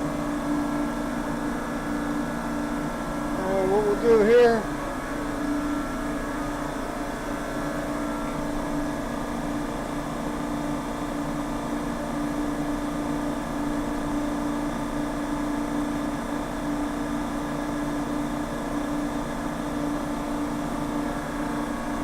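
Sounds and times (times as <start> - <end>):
steady mechanical hum: 0.0 - 22.0.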